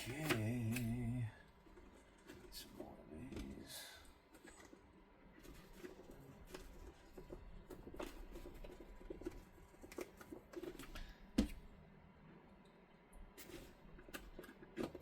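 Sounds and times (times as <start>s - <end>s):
stiff fabric crinkly rustling: 1.5s - 11.2s.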